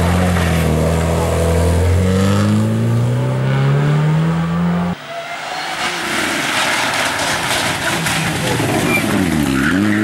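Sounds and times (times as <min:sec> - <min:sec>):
rally car engine accelerating: 0:00.0 - 0:05.0.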